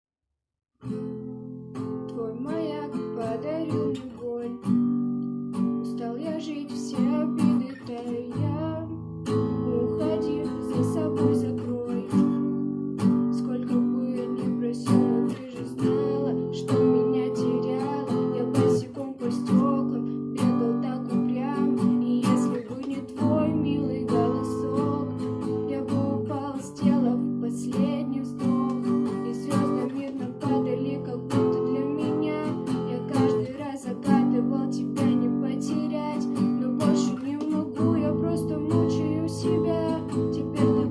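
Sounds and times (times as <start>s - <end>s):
acoustic guitar strumming: 0.8s - 40.9s.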